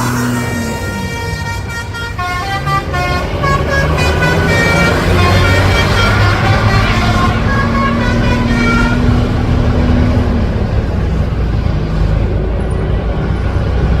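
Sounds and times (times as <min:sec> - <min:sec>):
multi-tone bus horn: 0:00.0 - 0:10.4
bus engine running: 0:00.0 - 0:14.0
road traffic: 0:00.0 - 0:14.0.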